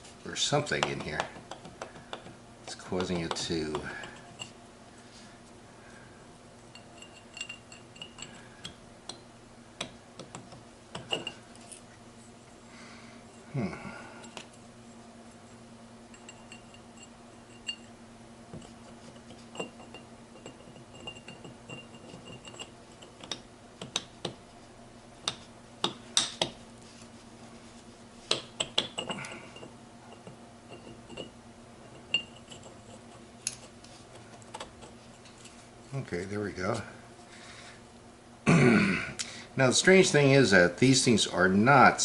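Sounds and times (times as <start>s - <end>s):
steel parts clinking: 6.8s - 8.8s, 11.0s - 11.9s.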